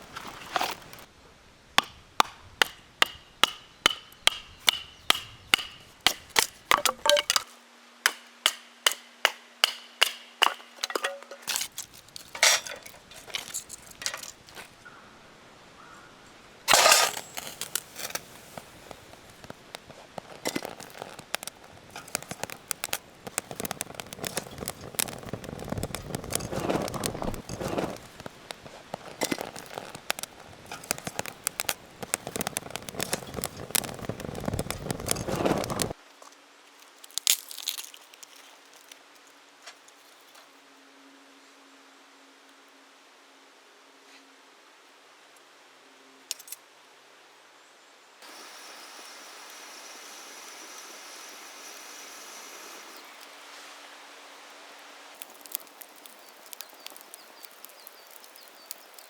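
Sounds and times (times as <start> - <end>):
light clicks and crackles: 0.0 - 1.1, 10.8 - 14.8, 16.7 - 40.5, 55.1 - 59.0
sharp striking blows: 8.1 - 11.5.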